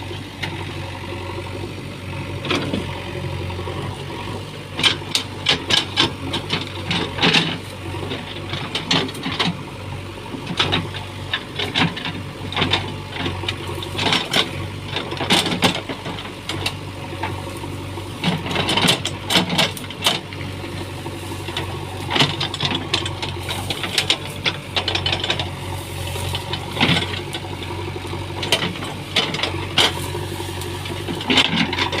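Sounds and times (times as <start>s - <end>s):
backhoe diesel engine running: 0.0s - 32.0s
machine rattling and clanking: 4.6s - 9.7s, 10.3s - 32.0s.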